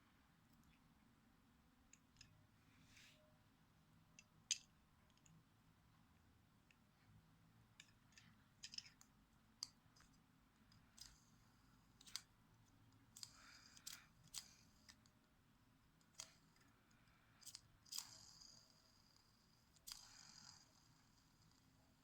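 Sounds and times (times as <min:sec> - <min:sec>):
plastic pieces clicking: 0:07.8 - 0:11.2.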